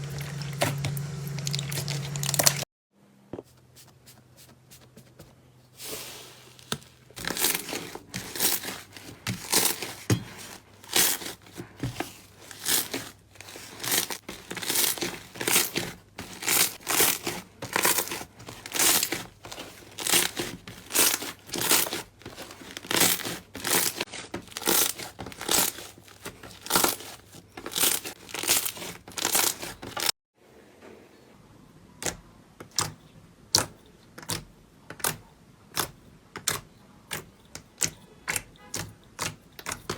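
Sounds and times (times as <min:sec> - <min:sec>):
slime squeezed crackling and popping: 0:01.3 - 0:02.6.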